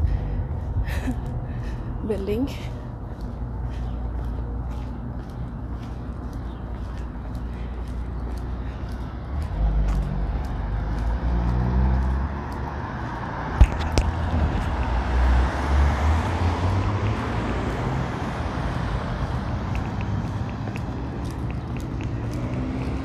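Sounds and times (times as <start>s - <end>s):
vehicle driving past: 9.2s - 23.0s.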